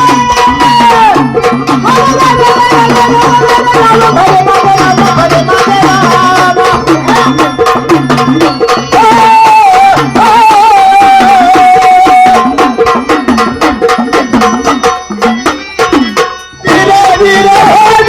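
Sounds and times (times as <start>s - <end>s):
person singing folk song: 0.0s - 7.6s, 8.9s - 12.6s, 16.6s - 18.0s
rhythmic drum strokes: 0.0s - 18.0s.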